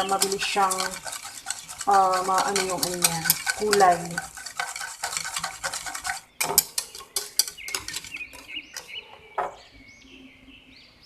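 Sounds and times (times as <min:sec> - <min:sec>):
metal spoon clinking against bowl: 0:00.0 - 0:09.0
faint bird calls: 0:06.3 - 0:11.0.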